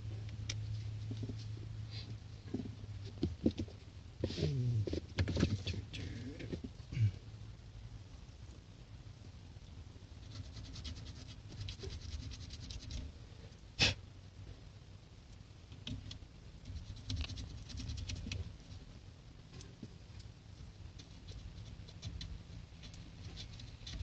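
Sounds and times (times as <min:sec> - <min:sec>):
hands scratching small parts: 0:10.2 - 0:13.1, 0:15.7 - 0:18.8, 0:19.6 - 0:24.0.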